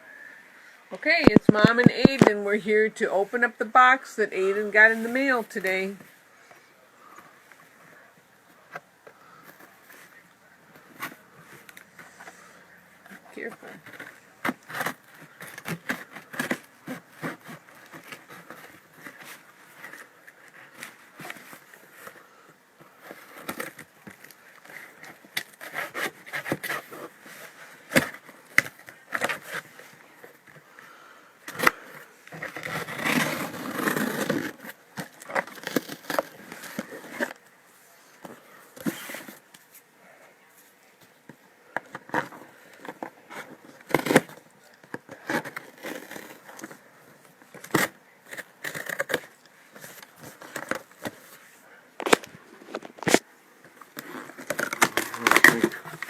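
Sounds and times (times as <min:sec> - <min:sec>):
scraping at cardboard box tape: 0:13.1 - 0:22.3, 0:23.0 - 0:30.4, 0:31.4 - 0:37.4, 0:41.9 - 0:46.8, 0:47.4 - 0:52.2, 0:53.9 - 0:56.0
packaging rustling and crinkling: 0:13.1 - 0:37.5, 0:40.6 - 0:56.0.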